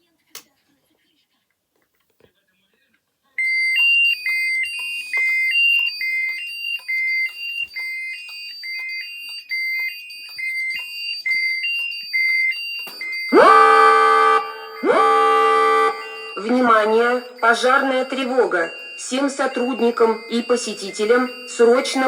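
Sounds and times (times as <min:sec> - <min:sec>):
two-tone electronic alarm sounder: 0:03.4 - 0:22.0
low horn-like alarm blasts: 0:13.1 - 0:22.0.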